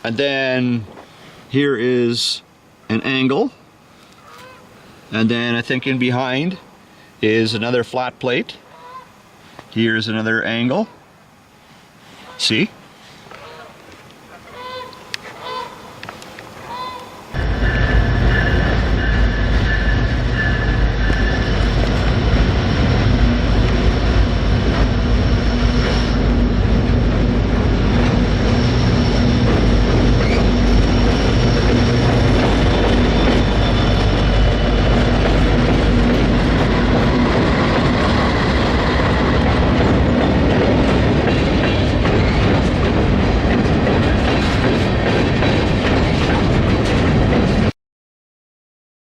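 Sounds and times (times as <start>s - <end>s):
faint high whining tones: 13.3s - 26.6s, 27.8s - 35.6s
train wheels rolling over bridge: 17.4s - 47.7s.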